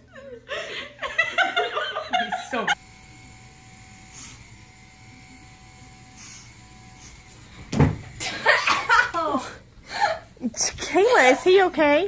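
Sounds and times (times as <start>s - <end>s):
loud thump: 7.7s - 8.2s.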